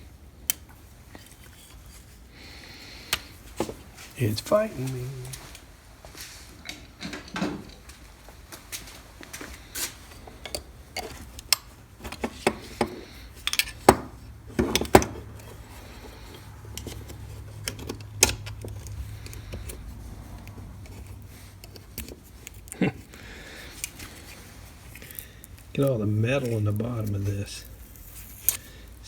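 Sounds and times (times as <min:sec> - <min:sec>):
metal parts clicking and clanking: 0:10.1 - 0:26.9.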